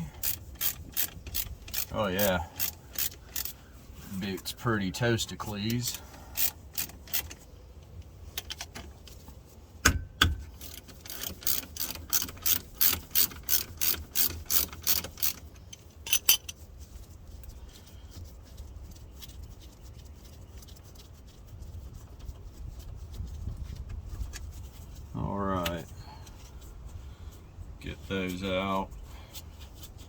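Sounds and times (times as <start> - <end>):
hand ratchet clicking: 0.0 - 3.6, 5.9 - 7.4, 10.6 - 15.5.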